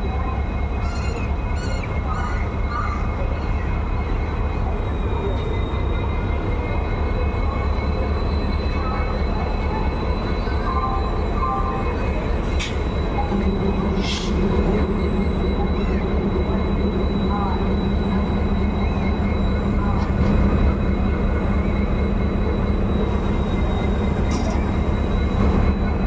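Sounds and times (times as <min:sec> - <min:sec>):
locomotive idling rumble: 0:00.0 - 0:26.0
air hisses: 0:14.0 - 0:14.4.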